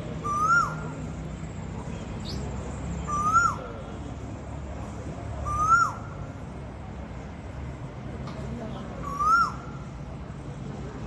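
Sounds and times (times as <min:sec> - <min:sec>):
whistled animal call: 0:00.2 - 0:00.9.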